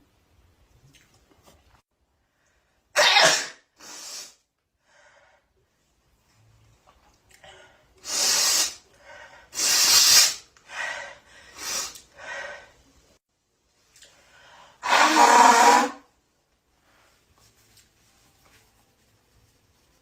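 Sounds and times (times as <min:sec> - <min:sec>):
woman sneezing: 0:03.0 - 0:04.3.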